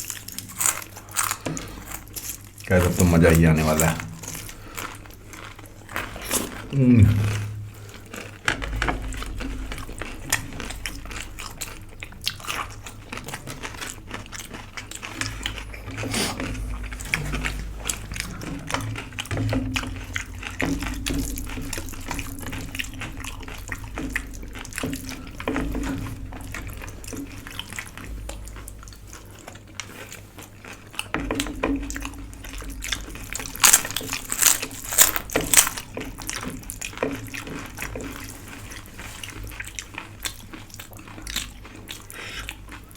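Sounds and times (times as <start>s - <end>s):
wet chewing: 0.0s - 42.9s
sharp crunches: 33.6s - 35.8s.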